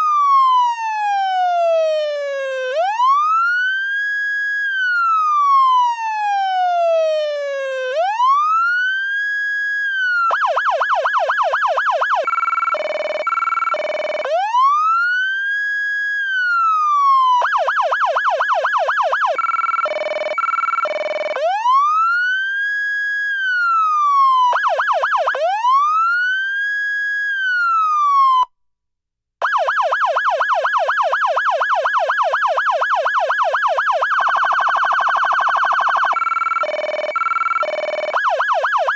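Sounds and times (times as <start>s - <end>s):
electronic siren wail and yelp: 0.0s - 28.5s, 29.4s - 38.9s.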